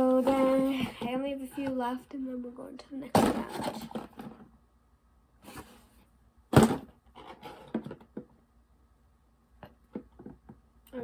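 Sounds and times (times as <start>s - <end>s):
fidget toys rustling and knocking: 3.1s - 4.5s.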